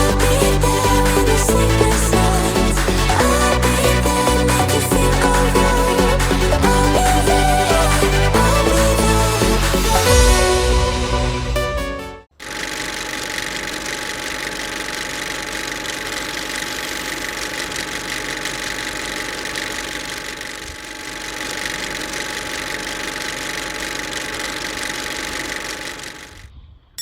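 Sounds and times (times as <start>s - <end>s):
steady mechanical drone: 0.0s - 11.6s.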